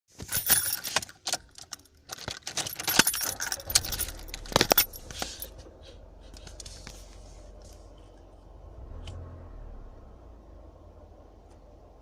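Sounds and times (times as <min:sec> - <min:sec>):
metallic clinks: 0:00.2 - 0:05.6
faint low engine hum: 0:01.4 - 0:12.0.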